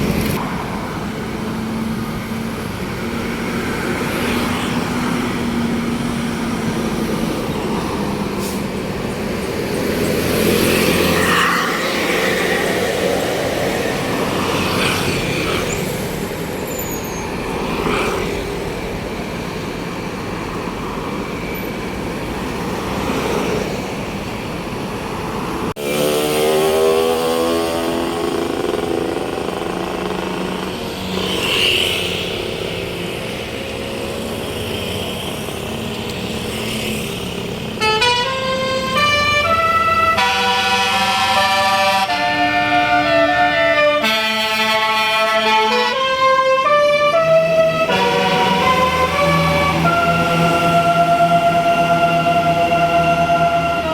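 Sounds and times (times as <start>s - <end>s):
bus engines running: 0.0s - 53.9s
traffic noise: 0.0s - 53.9s
air horn playing melody: 37.8s - 53.9s.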